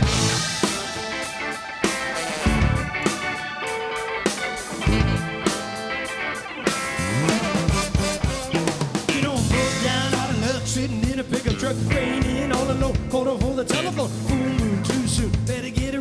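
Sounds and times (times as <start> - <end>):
bass: 0.0 - 1.1, 2.4 - 3.2, 4.7 - 5.6, 6.7 - 16.0
drum kit hits: 0.0 - 3.6, 4.4 - 5.8, 6.9 - 13.8
guitar: 0.0 - 16.0.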